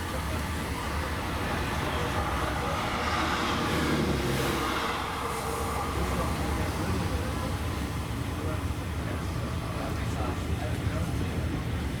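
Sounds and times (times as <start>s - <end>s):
train rumbling: 0.0s - 9.1s.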